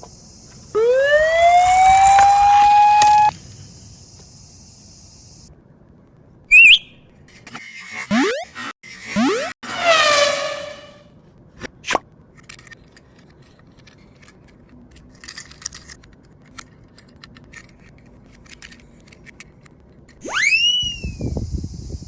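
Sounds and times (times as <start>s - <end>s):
quick upward chirps: 0.7s - 3.3s, 6.5s - 7.0s, 8.1s - 11.1s, 20.2s - 21.3s
rising whistle-like glide: 0.8s - 3.3s, 6.5s - 6.9s, 9.2s - 11.1s, 20.2s - 21.8s
toy cars clicking and rattling: 1.6s - 3.3s, 12.3s - 20.2s.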